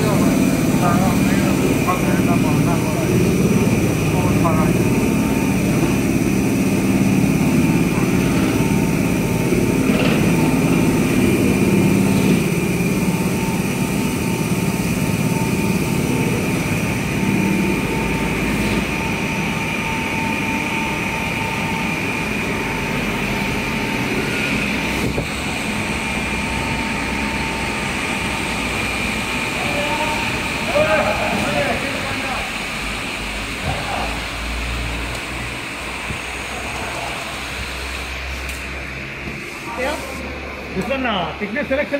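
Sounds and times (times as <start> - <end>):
factory machinery drone: 0.0 - 41.9
high machine whine: 0.0 - 41.9.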